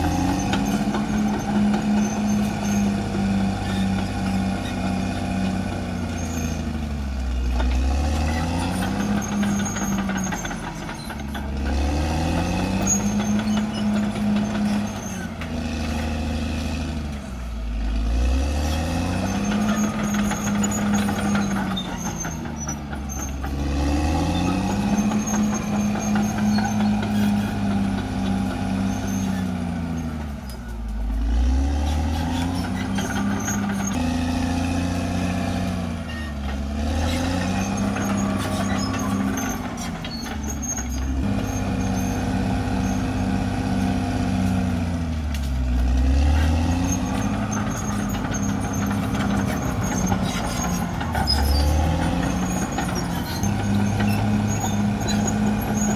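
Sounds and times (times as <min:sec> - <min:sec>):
bulldozer diesel engine working: 0:00.0 - 0:55.9
faint high squeaks: 0:18.6 - 0:30.7, 0:36.0 - 0:44.0, 0:46.4 - 0:55.9.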